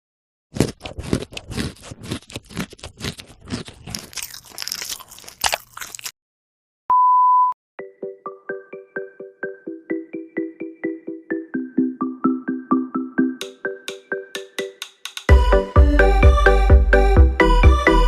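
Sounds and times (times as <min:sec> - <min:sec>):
crunching and chewing food: 0:00.5 - 0:06.2.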